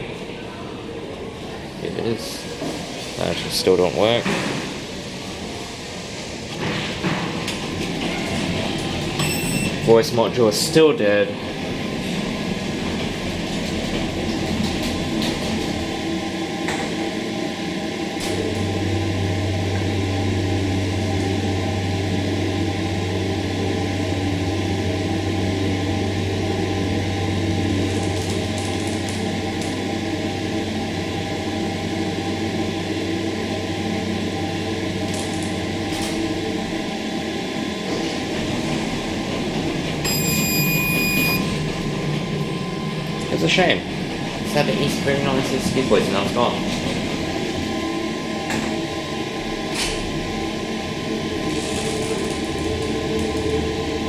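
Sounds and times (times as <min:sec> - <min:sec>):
elevator low hum: 0:07.2 - 0:54.0
low mains-like hum: 0:08.3 - 0:11.4, 0:40.0 - 0:43.9
high electronic beep: 0:09.2 - 0:09.8, 0:40.0 - 0:41.5.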